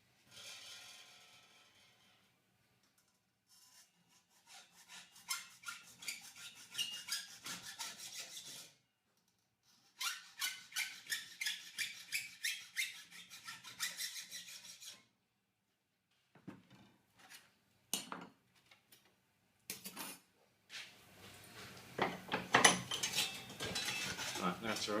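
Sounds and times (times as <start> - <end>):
hacksaw cutting metal: 4.4 - 8.8, 10.0 - 15.0, 22.8 - 25.0.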